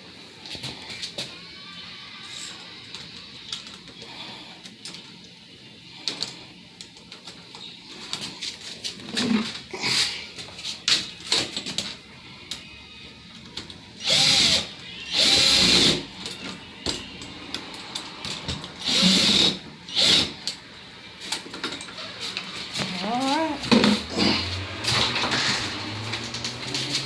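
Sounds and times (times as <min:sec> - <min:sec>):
power drill driving screws: 0:14.0 - 0:16.1, 0:18.8 - 0:20.5.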